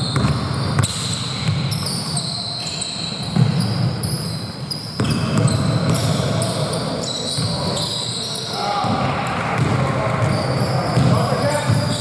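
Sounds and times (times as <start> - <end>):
basketball bouncing: 0.0 - 1.7, 8.8 - 11.9
sneakers squeaking on floor: 0.0 - 12.0.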